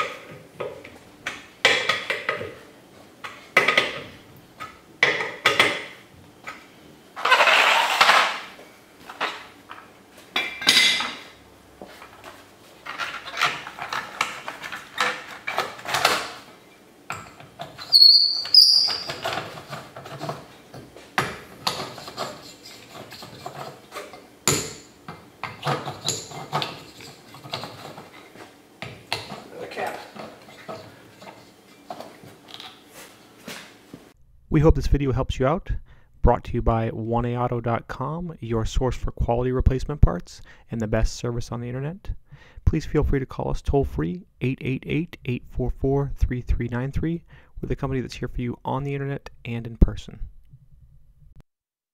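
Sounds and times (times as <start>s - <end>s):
brief high squeal: 17.9s - 19.1s
metal tools clanking: 21.6s - 28.4s.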